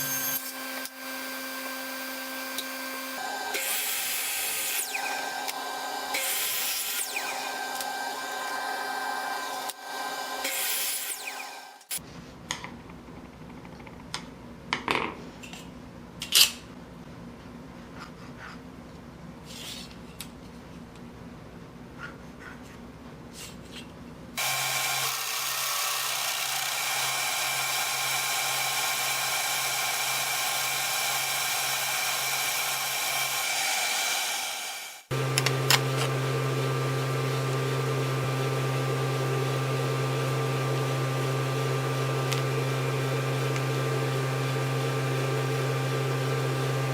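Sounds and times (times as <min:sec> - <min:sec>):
power tool motor cutting wood: 0:00.0 - 0:12.0, 0:24.4 - 0:38.4.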